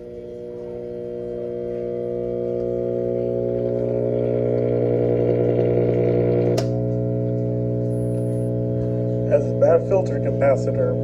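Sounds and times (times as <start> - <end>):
radio speaker humming: 0.0 - 11.0.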